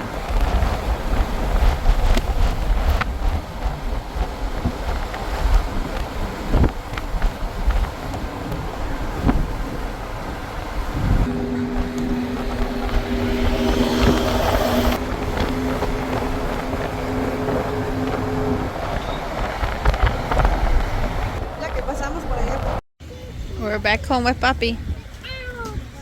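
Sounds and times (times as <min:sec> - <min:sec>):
vehicle running noise inside: 0:00.0 - 0:22.8
two-tone hum: 0:11.0 - 0:21.4.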